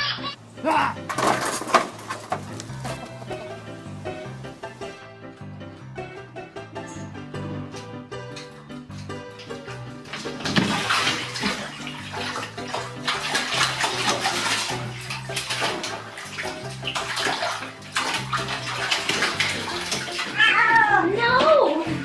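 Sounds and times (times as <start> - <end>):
water splashing in bathtub: 9.3 - 22.0.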